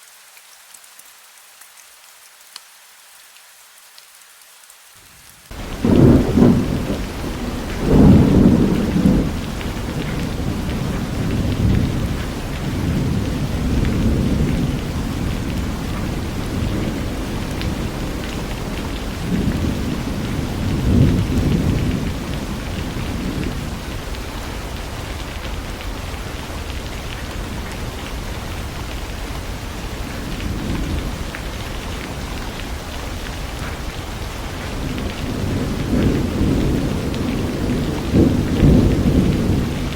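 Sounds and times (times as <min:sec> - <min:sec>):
heavy rain: 0:00.0 - 0:39.9
rolling thunder: 0:05.5 - 0:26.1, 0:27.3 - 0:32.4, 0:33.5 - 0:39.9.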